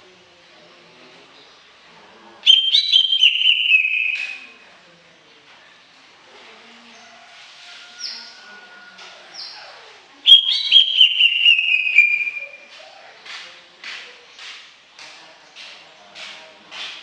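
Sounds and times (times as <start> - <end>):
bird singing whistled phrase: 2.5 - 4.5, 10.3 - 12.7.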